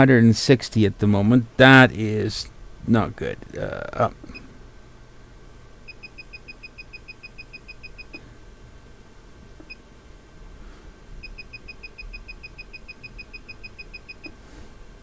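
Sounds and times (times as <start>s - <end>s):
control panel beeping: 5.9s - 8.2s, 11.2s - 14.4s.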